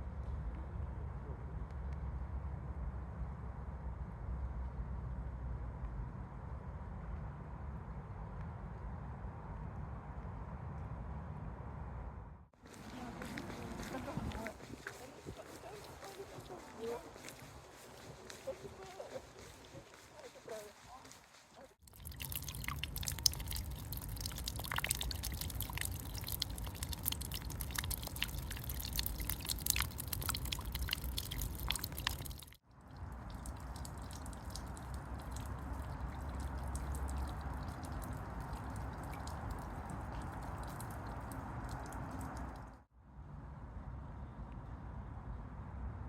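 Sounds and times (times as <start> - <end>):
dull rain hiss: 12.6 - 42.7
raindrops ticking and splattering: 12.7 - 42.8.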